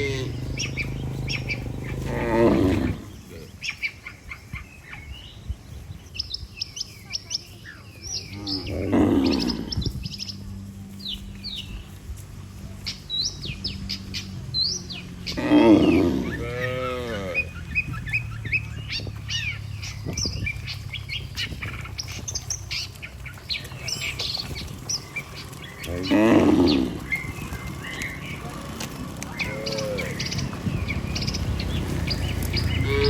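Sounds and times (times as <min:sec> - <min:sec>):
cow mooing: 0:00.0 - 0:03.2, 0:08.4 - 0:09.8, 0:15.2 - 0:17.6, 0:25.8 - 0:27.2, 0:29.4 - 0:30.7, 0:31.6 - 0:33.0
small birds chirping: 0:00.0 - 0:33.0.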